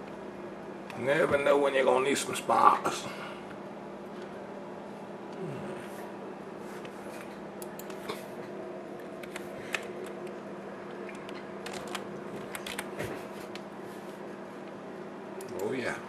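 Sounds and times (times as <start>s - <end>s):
low electrical hum: 0.0s - 16.0s
computer clicks: 11.1s - 12.9s.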